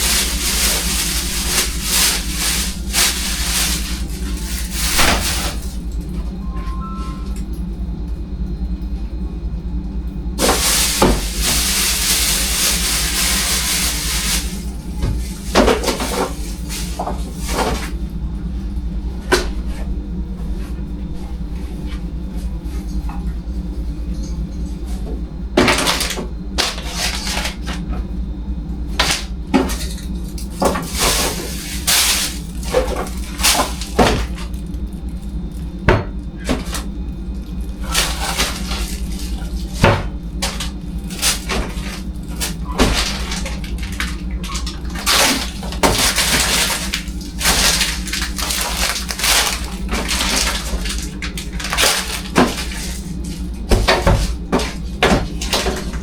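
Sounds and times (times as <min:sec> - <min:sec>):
scrubbing noises: 0:00.0 - 0:05.8, 0:10.4 - 0:18.0, 0:29.8 - 0:34.8, 0:36.4 - 0:56.0
steady low hum: 0:00.0 - 0:56.0.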